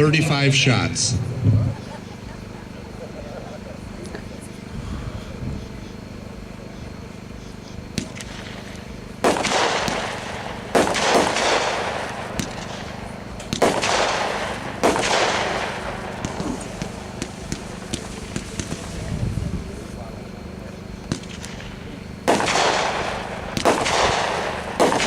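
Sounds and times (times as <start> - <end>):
light firework pops: 7.9 - 19.2, 21.0 - 25.0
firework bangs with crackle: 7.9 - 19.9, 21.0 - 25.0.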